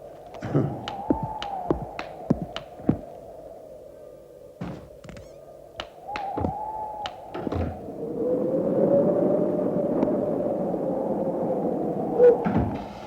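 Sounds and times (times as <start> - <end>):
dull thunks and knocks: 0.4 - 3.0, 4.6 - 5.2, 6.4 - 6.6.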